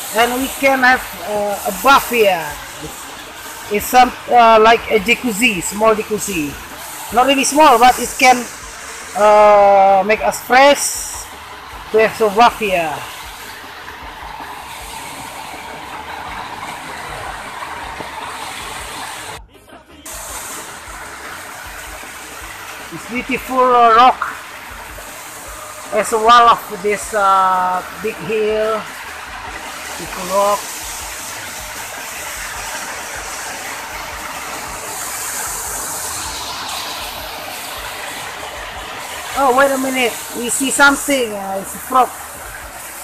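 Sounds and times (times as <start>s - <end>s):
waterfall rushing into pool: 0.0s - 43.0s.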